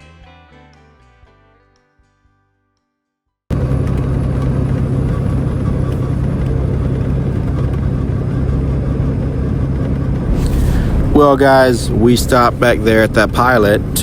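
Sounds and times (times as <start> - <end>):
road noise: 3.5 - 14.0
truck engine drone: 3.5 - 14.0.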